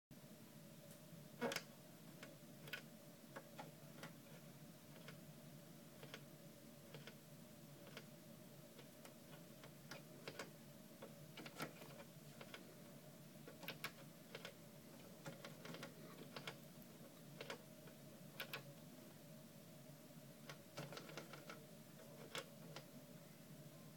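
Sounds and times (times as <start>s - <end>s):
low steady hum: 0.1s - 23.9s
faint clicks and ticks: 0.8s - 5.2s, 5.9s - 7.2s, 7.8s - 8.1s, 8.7s - 18.9s, 20.4s - 23.0s.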